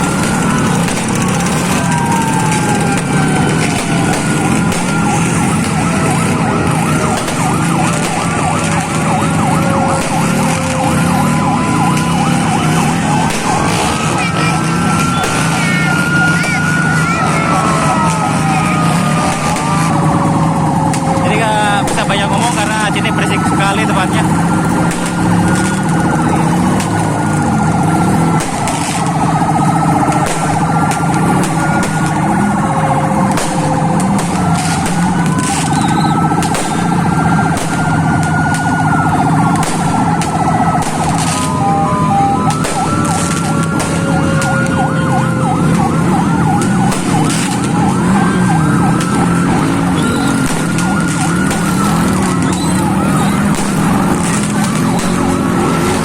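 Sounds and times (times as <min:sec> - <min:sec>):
ambulance sirens wailing: 0:00.0 - 0:56.0
siren fast warbling yelp: 0:00.0 - 0:56.0
sharp pops: 0:33.3 - 0:38.8.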